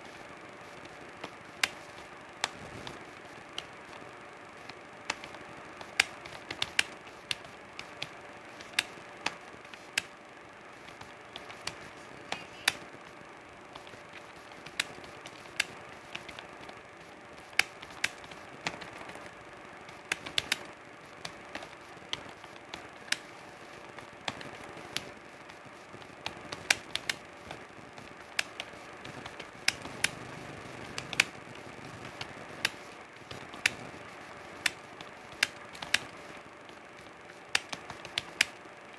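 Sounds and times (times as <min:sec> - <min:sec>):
keyboard keys clicking: 0:04.6 - 0:10.2, 0:10.8 - 0:12.9, 0:13.7 - 0:16.8, 0:17.4 - 0:23.4, 0:26.0 - 0:38.6.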